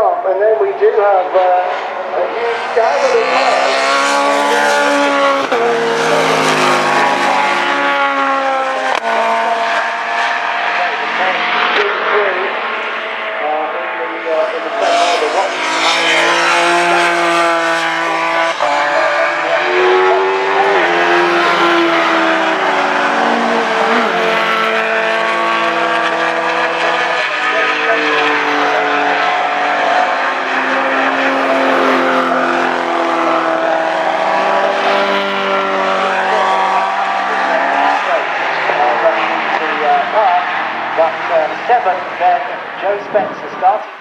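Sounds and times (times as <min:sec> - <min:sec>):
racing car engines: 0:00.0 - 0:44.0.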